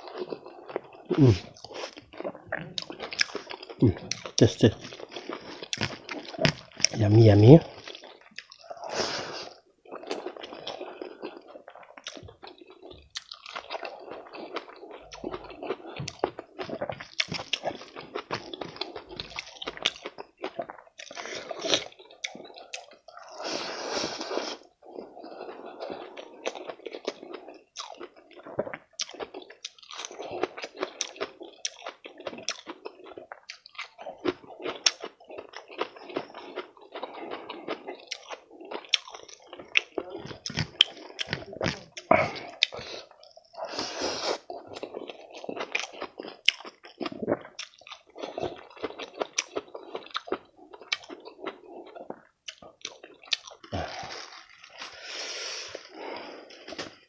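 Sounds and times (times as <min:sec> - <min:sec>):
person chewing food: 0:00.0 - 0:57.0
crisp food crunches: 0:52.5 - 0:55.9.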